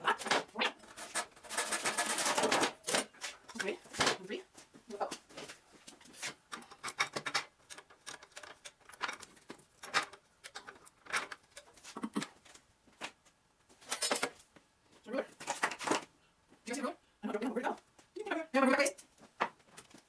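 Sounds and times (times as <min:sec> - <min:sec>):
objects rubbing and scraping: 0:00.0 - 0:04.1.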